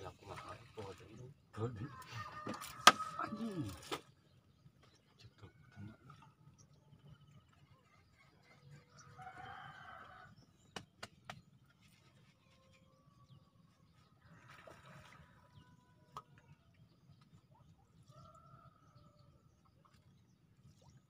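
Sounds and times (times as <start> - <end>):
distant rooster crowing: 1.8 - 3.8, 9.1 - 10.4.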